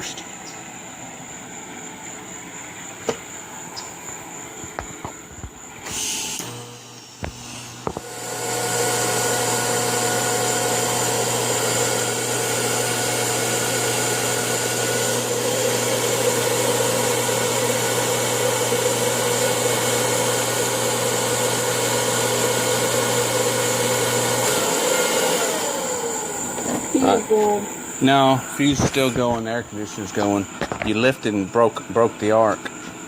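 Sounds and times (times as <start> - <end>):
welding arc hissing and buzzing: 4.8 - 10.1.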